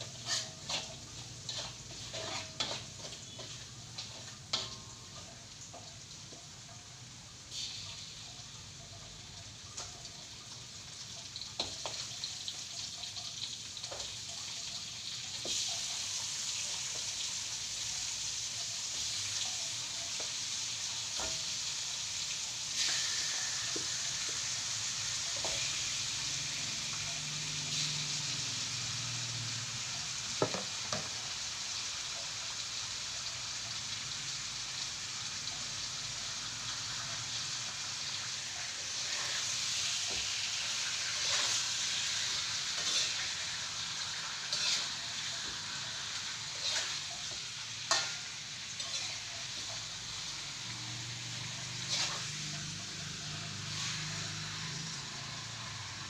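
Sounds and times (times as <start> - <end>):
food sizzling in hot oil: 0.0 - 56.0
utensil knocking against pan: 30.4 - 31.1.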